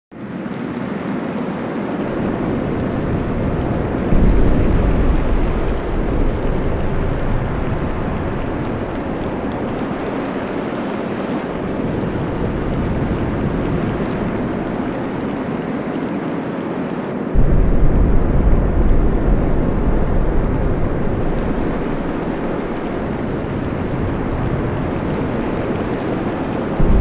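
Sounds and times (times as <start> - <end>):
wind: 0.1 - 27.0
surf: 1.8 - 16.4, 17.3 - 27.0
deep rumble: 2.3 - 10.5, 17.4 - 27.0.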